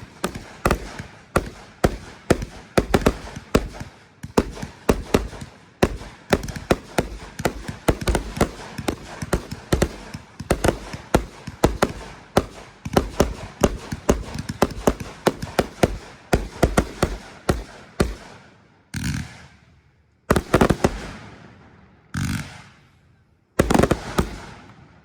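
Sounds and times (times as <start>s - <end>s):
fireworks bangs: 0.0s - 18.4s, 20.3s - 21.4s, 23.6s - 24.9s.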